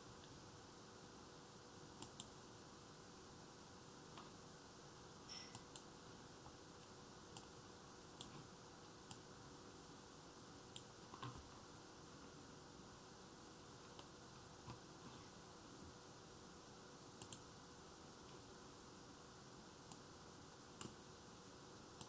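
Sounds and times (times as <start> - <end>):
computer mouse clicks: 2.0 - 2.4, 5.3 - 5.9, 6.8 - 7.6, 8.2 - 9.3, 10.7 - 11.4, 17.2 - 17.5, 19.8 - 20.1, 20.8 - 21.0.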